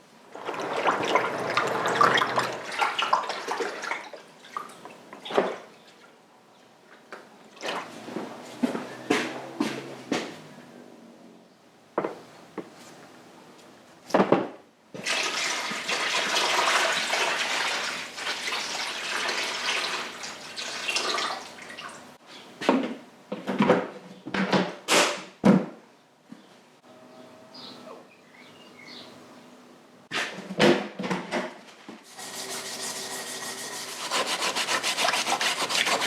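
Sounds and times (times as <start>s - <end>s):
liquid pouring into container: 0.4s - 4.1s.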